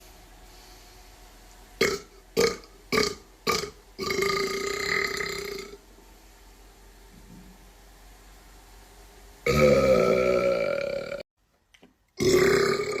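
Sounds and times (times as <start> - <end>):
man burping: 1.8 - 5.8, 9.4 - 11.2, 12.2 - 13.0.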